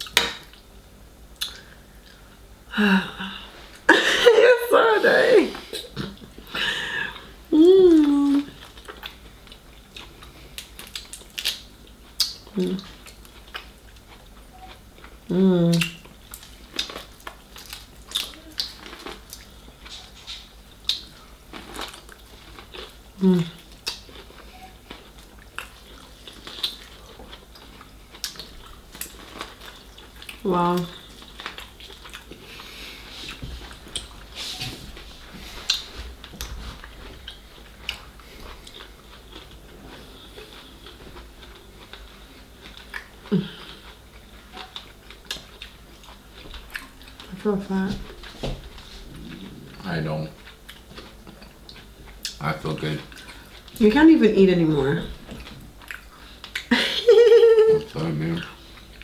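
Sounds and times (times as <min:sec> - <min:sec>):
chewing shellfish: 0:08.0 - 0:47.4, 0:48.0 - 0:53.9, 0:55.1 - 0:56.7.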